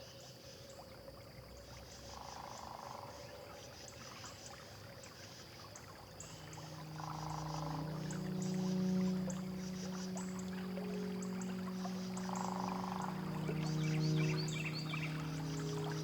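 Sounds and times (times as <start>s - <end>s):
water lapping and splashing: 5.8s - 16.0s
low music drone: 6.2s - 16.0s.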